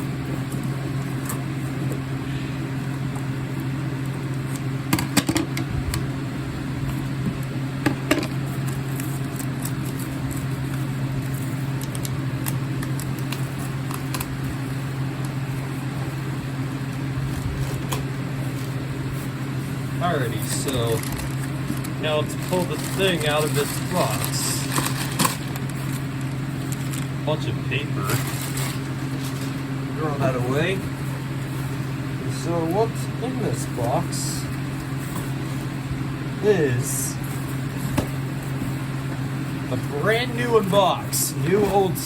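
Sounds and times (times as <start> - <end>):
low mechanical hum: 0.0 - 42.0
packing tape being cut: 20.3 - 27.1, 28.0 - 29.6.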